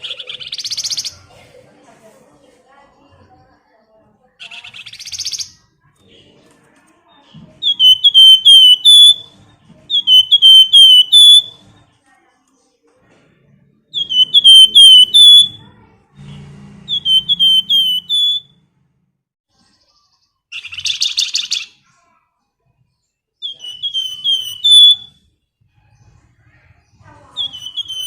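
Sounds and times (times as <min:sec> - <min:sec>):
bird whistling down-slurred notes: 0:07.6 - 0:11.6, 0:14.0 - 0:15.7, 0:16.9 - 0:18.6, 0:23.4 - 0:25.2, 0:27.4 - 0:28.0.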